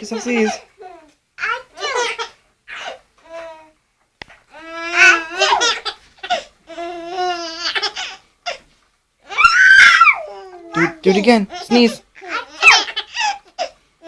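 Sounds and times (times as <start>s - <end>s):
baby laughing: 0.0s - 3.5s, 4.7s - 8.6s, 9.3s - 13.8s
baby squealing: 9.3s - 13.7s.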